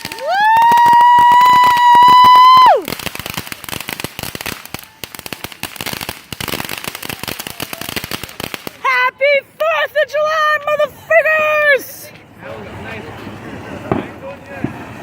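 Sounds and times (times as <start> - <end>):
firework whistle: 0.0 - 5.5
firecrackers crackling: 0.0 - 15.0.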